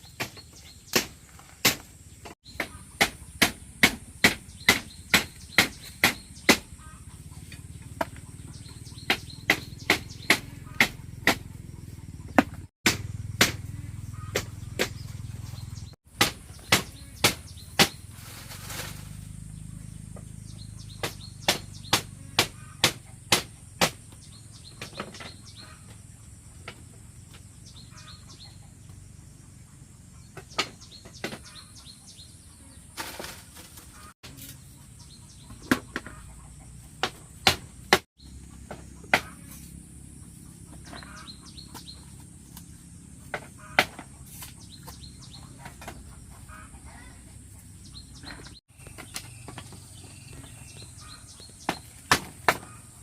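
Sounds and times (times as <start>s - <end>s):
hand tool striking wood: 0.1s - 6.7s, 8.9s - 11.5s, 12.3s - 15.1s, 16.1s - 19.0s, 21.0s - 24.2s, 37.0s - 38.1s, 38.7s - 39.7s, 43.3s - 46.1s, 51.6s - 52.8s.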